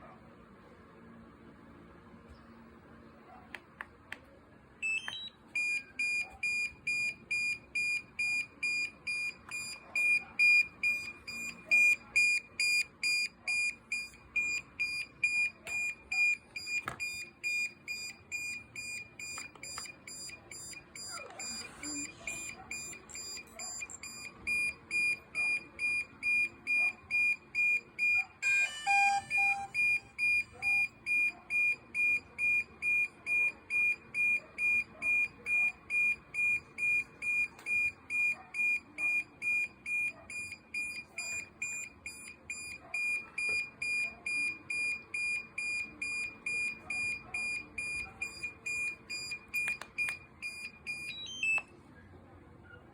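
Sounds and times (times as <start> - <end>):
drone high-pitched beeping: 8.2 - 37.9.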